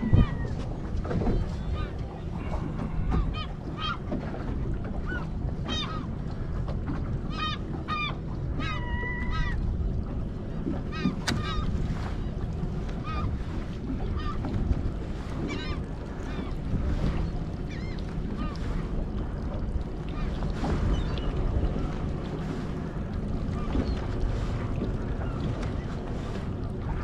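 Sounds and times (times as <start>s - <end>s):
seabirds squawking: 0.0s - 0.6s, 1.2s - 4.2s, 4.9s - 6.2s, 7.2s - 9.6s, 10.8s - 14.5s, 15.3s - 18.6s
wind and water rumble: 0.0s - 27.0s.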